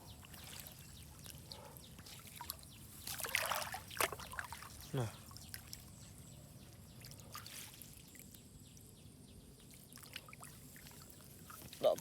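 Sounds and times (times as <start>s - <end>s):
soft splashes: 2.0s - 5.9s, 9.9s - 12.0s.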